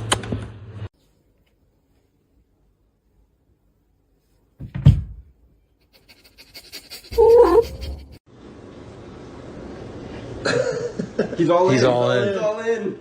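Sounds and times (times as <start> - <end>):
pet crying: 7.1 - 8.0.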